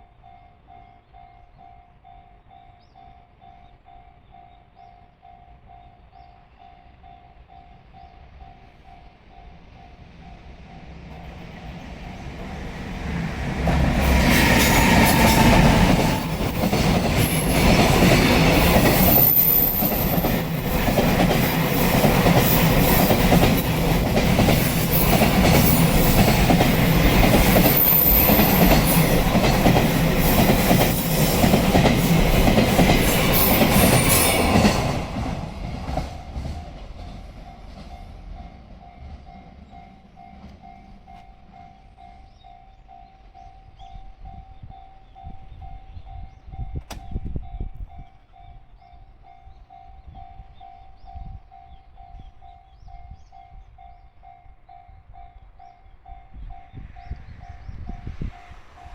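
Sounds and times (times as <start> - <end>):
train wheels clattering: 10.9 - 42.4
crossing warning bell ringing: 13.9 - 35.1, 36.1 - 57.2.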